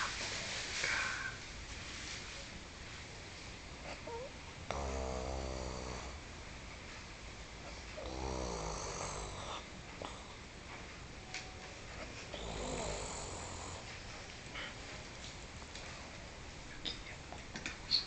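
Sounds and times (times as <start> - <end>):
woman snoring: 4.0 - 6.2, 8.0 - 10.2, 12.4 - 13.9.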